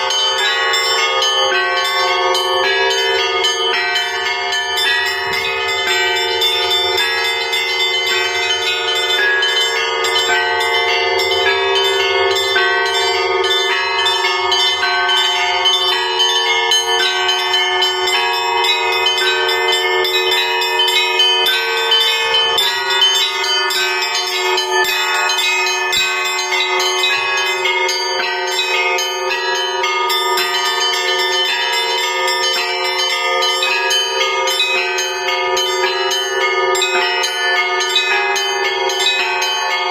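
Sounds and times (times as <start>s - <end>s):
larger bells ringing steadily: 0.0s - 39.9s
small high bells ringing quickly: 0.0s - 39.9s.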